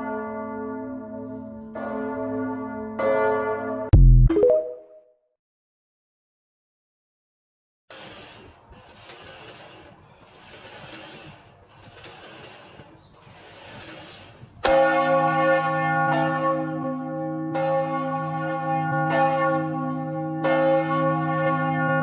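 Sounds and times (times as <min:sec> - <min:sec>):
large church bell ringing: 0:00.0 - 0:03.9, 0:14.6 - 0:22.0.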